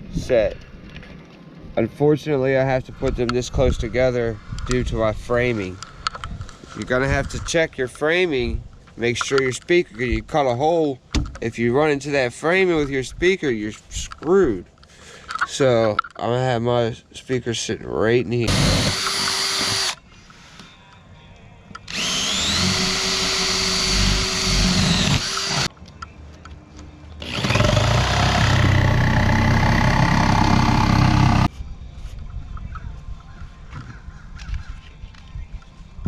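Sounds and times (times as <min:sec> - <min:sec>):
power tool cutting panel: 0:18.5 - 0:20.0, 0:21.9 - 0:25.7, 0:27.2 - 0:31.5.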